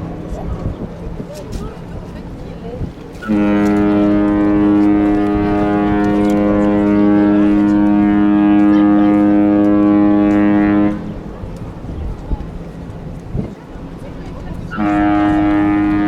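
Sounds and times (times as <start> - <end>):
ship horn blast: 3.1 - 11.4, 14.6 - 16.0.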